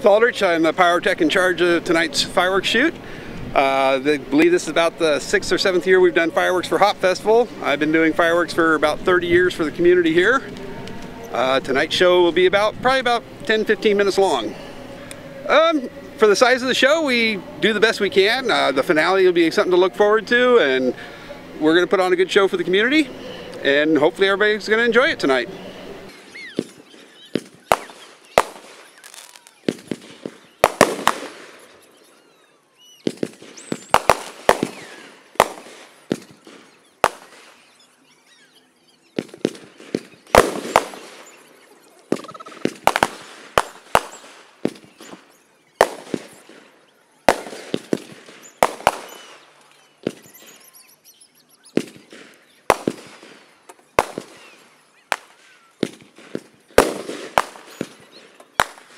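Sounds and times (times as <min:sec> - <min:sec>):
fireworks bursting: 0:24.7 - 0:32.2, 0:32.8 - 0:38.3, 0:39.0 - 0:51.0, 0:51.6 - 0:58.9.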